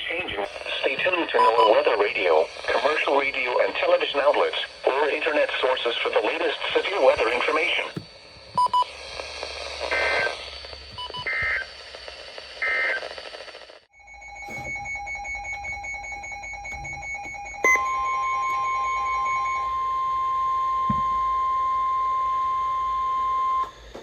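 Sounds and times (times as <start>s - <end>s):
steady warning alarm tone: 0.0s - 13.2s, 13.9s - 23.9s
warbling data bursts: 0.0s - 13.3s
pulsing beep: 0.6s - 3.1s, 6.7s - 9.0s, 9.9s - 11.7s, 14.0s - 19.6s.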